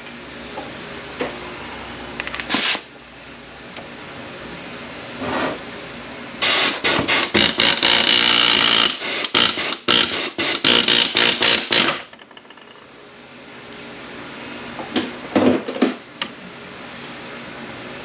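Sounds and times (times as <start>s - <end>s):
pneumatic air hammer bursts: 2.5s - 2.8s, 6.4s - 12.1s.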